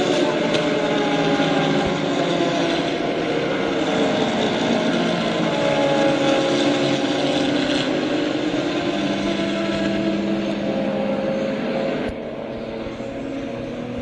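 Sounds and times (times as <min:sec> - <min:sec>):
racing car engines running hard: 0:00.0 - 0:14.0.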